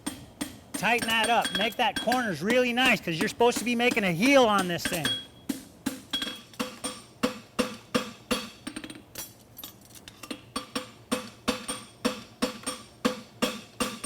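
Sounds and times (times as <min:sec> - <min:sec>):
hammer striking steel on anvil: 0:00.0 - 0:09.0, 0:10.3 - 0:14.0.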